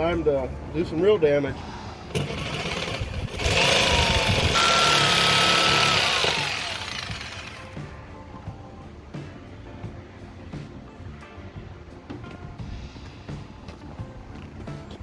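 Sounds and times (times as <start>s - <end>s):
oscillating multi-tool cutting: 2.1s - 7.8s.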